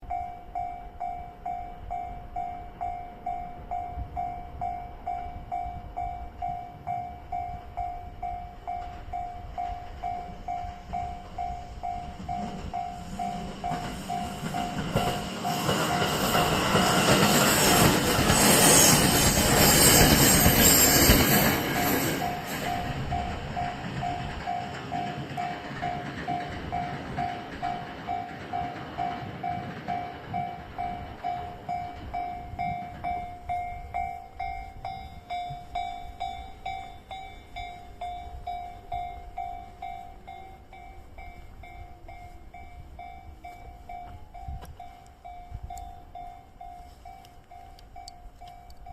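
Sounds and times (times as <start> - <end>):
train passing on rails: 0.0 - 48.9
level crossing bell ringing: 21.6 - 48.9.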